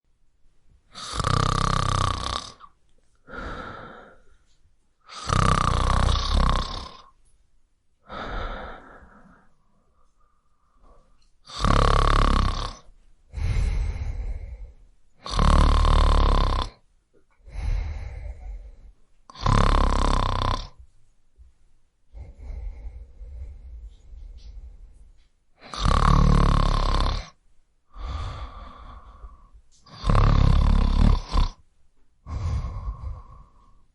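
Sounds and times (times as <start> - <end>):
man snoring loudly: 0.9 - 2.7, 5.1 - 7.1, 11.5 - 14.6, 15.2 - 16.8, 19.3 - 20.8, 25.6 - 31.6
soft breath: 3.1 - 4.7, 8.0 - 11.3, 13.3 - 14.9, 17.4 - 19.1, 22.1 - 25.8, 27.9 - 30.0, 32.2 - 33.9.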